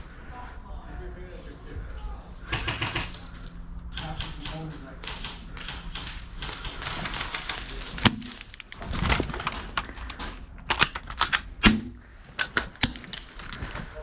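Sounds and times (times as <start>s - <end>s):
airsoft gun shots: 2.5s - 3.2s, 11.6s - 13.0s.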